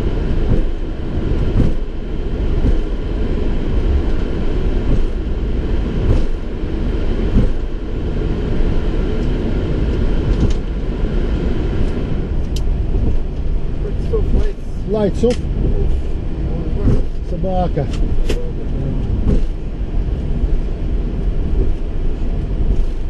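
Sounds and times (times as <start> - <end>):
jet engines idling: 0.0 - 23.0.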